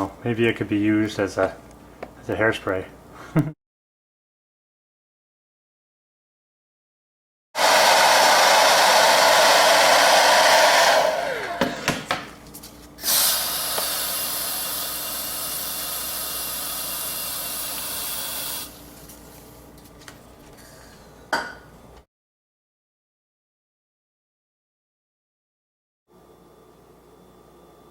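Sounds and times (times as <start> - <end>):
motor winding down whine: 7.6 - 11.9
hair dryer blowing: 7.6 - 12.2, 13.0 - 18.8.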